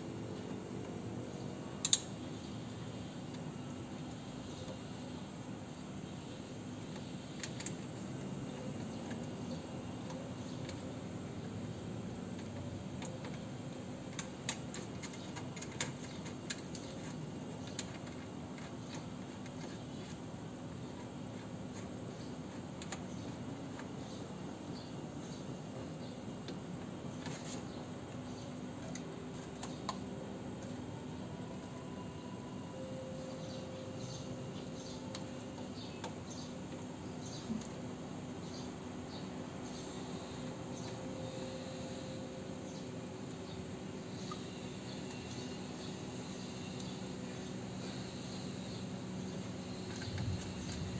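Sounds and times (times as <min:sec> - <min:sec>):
steady low hum: 0:00.0 - 0:50.9
small birds chirping: 0:33.2 - 0:50.9.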